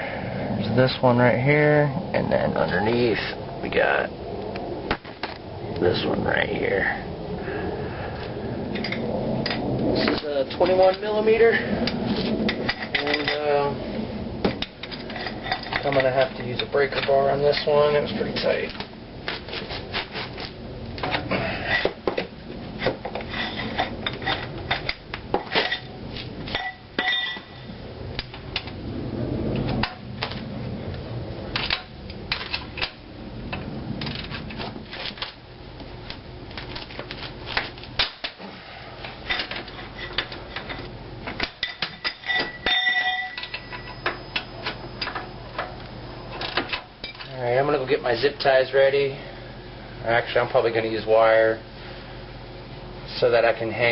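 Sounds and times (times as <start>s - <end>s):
ringing metallic clinks: 41.6s - 44.5s.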